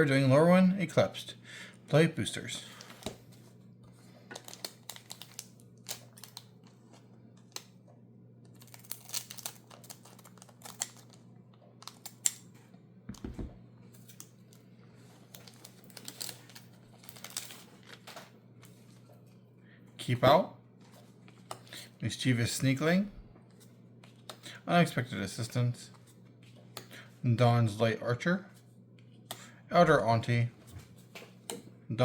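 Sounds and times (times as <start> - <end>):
low steady hum: 0.0 - 32.0
foil wrapper crinkling: 4.3 - 7.7, 8.4 - 11.2, 11.8 - 12.4, 13.9 - 18.2
cards being handled: 8.5 - 11.2.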